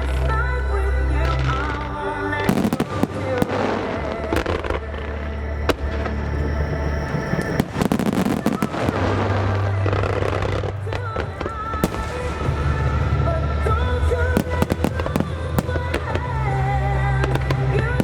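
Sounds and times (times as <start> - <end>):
low rumble: 0.0 - 18.0
fireworks bangs and crackles: 2.5 - 16.6.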